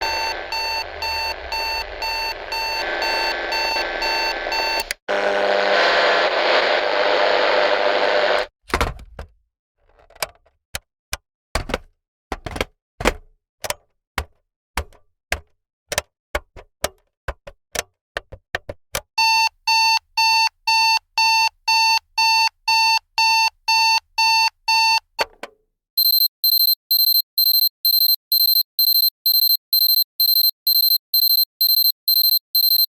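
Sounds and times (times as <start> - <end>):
electronic alarm beeping low tone: 0.0 - 4.9, 26.0 - 32.9
higher-pitched alarm beep: 0.0 - 4.9, 26.0 - 32.9
clock ticking: 26.0 - 32.9.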